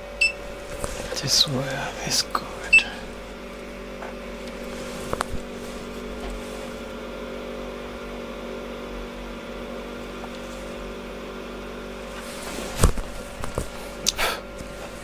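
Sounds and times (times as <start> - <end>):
machine hum: 0.0 - 15.0.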